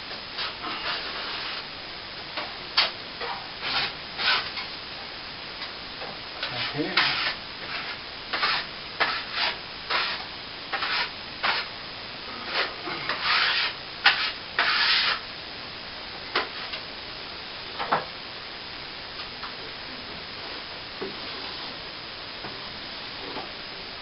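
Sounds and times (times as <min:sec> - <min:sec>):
plastering tool scraping: 0:00.4 - 0:01.6, 0:02.8 - 0:04.6, 0:06.4 - 0:11.7, 0:12.4 - 0:15.2.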